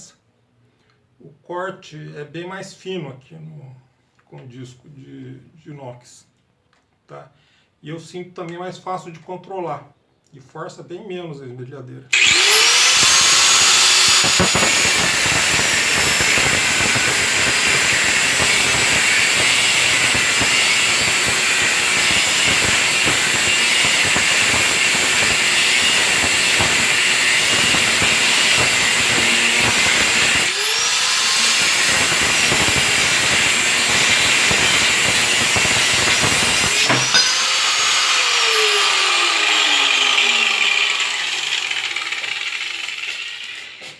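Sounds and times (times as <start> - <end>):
angle grinder cutting sheet steel: 12.1 - 43.9.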